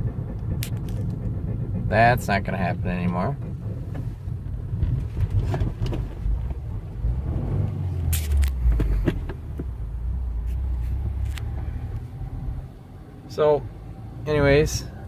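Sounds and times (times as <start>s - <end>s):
car road and engine rumble: 0.0s - 15.0s.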